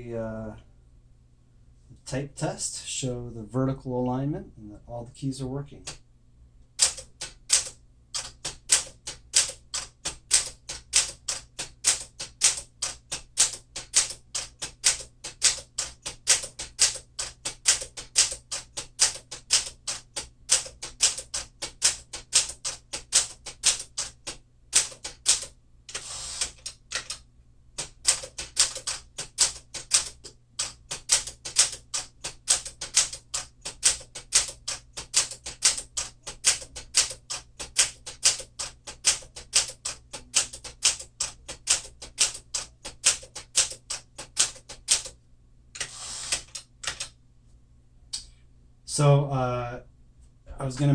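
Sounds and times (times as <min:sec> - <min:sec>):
typewriter carriage return rasp: 0:06.8 - 0:27.2, 0:27.8 - 0:45.1, 0:45.8 - 0:47.1
typewriter keys clacking: 0:06.8 - 0:27.2, 0:27.8 - 0:45.1, 0:45.8 - 0:47.1.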